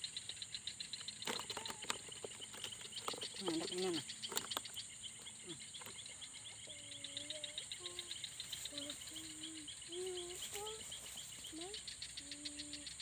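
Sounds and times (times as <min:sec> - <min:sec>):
crickets chirping in chorus: 0:00.0 - 0:13.0.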